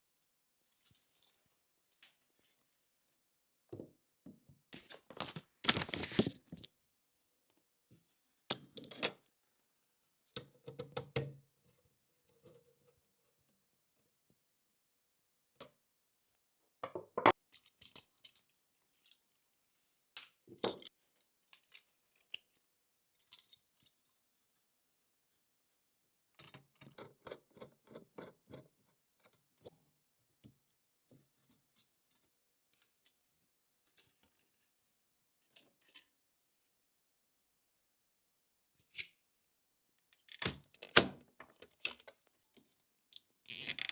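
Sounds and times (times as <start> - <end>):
packaging tearing rustle: 5.2 - 6.7.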